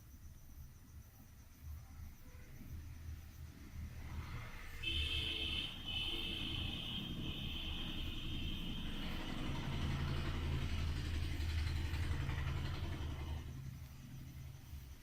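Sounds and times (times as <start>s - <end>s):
low engine rumble: 1.8s - 15.0s.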